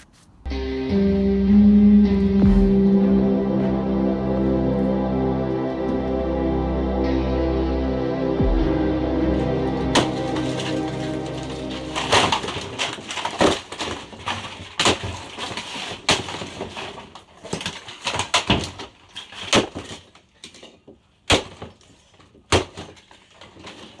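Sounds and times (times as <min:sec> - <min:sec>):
crackles of breaking material: 0:10.0 - 0:24.0.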